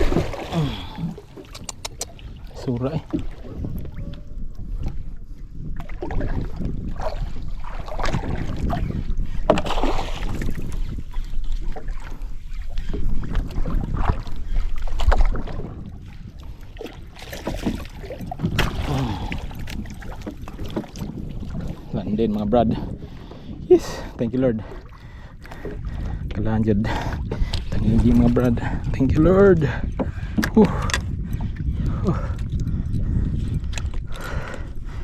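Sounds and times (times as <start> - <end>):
knocks and splashes: 0.0 - 4.0, 5.7 - 11.0, 12.9 - 16.0, 16.8 - 21.8, 30.0 - 31.1
water noise around boat: 0.0 - 35.0
wind on microphone: 0.0 - 35.0.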